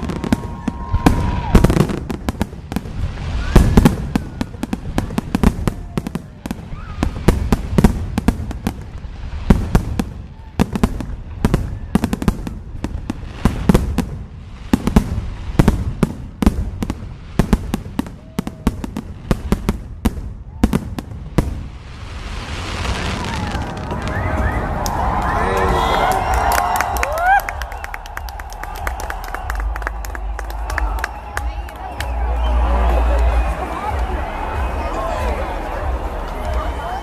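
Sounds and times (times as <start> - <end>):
fireworks banging and crackling: 0.0 - 37.0
faint firework whistles: 3.1 - 4.7, 22.6 - 25.8.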